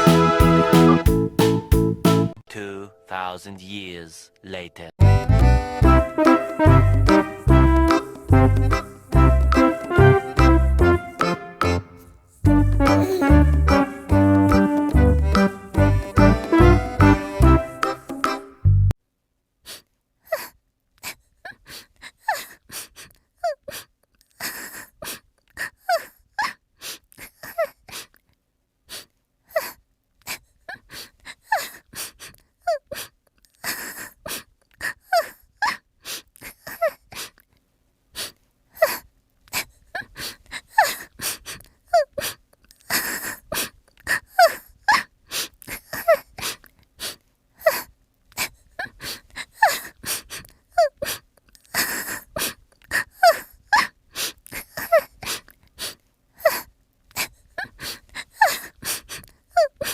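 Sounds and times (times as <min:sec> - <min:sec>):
squeaky vocal sounds and whimpers: 0:12.8 - 0:13.4.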